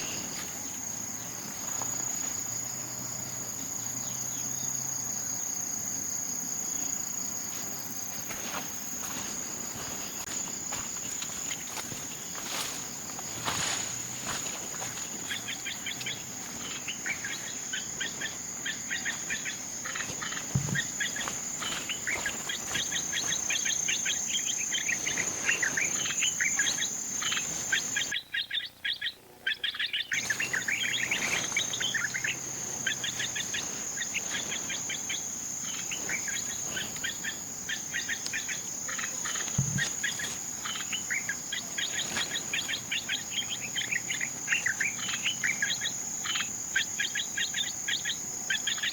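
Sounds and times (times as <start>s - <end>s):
high-pitched insect drone: 0.0s - 28.1s, 30.2s - 48.9s
bird and insect chirps: 0.0s - 48.9s.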